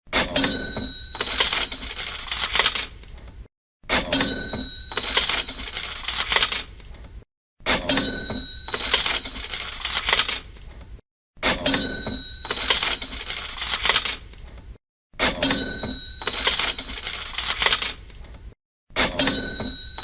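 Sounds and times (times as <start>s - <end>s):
cash register bell ring: 0.3s - 2.8s, 4.0s - 6.6s, 7.8s - 10.4s, 11.4s - 14.2s, 15.3s - 18.0s, 19.0s - 20.0s
coins rattling: 1.1s - 3.1s, 4.9s - 6.9s, 8.7s - 10.7s, 12.4s - 14.4s, 16.2s - 18.2s.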